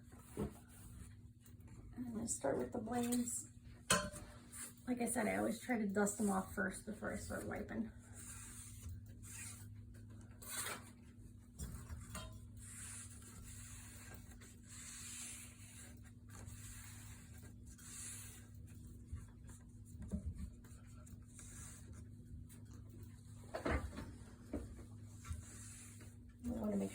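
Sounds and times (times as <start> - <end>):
rubbing strokes on fan blades: 4.4 - 10.8, 12.1 - 23.4, 25.0 - 26.9.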